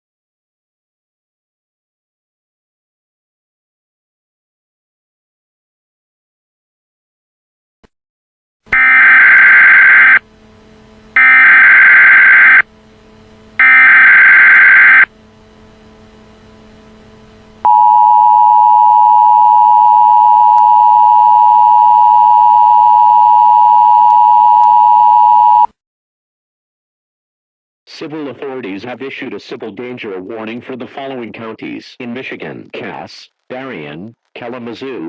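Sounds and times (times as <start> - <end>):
warbling data bursts: 8.8 - 10.2, 11.2 - 12.6, 13.6 - 15.1.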